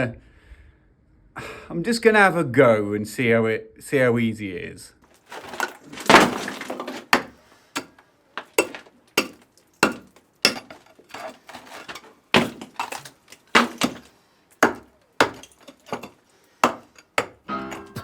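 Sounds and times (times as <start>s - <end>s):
hand tool knocks and clinks: 8.5s - 14.0s, 14.6s - 18.0s.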